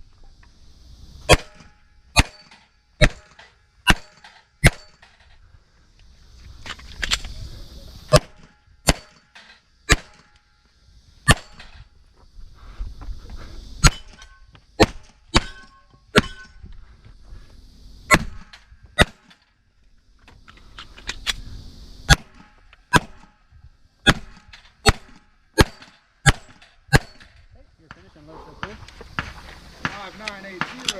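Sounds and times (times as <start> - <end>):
pistol shots: 1.3 - 5.1, 8.1 - 10.3, 11.3 - 11.8, 14.8 - 16.5, 18.1 - 19.4, 22.1 - 23.3, 24.1 - 27.4, 28.6 - 30.9.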